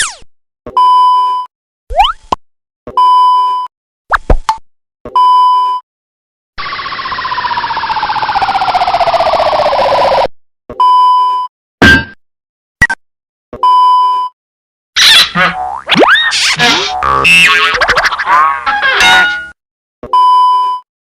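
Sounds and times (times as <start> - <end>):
falling warbling cartoon tone: 15.0 - 19.4
cartoon sound effects: 15.0 - 19.5.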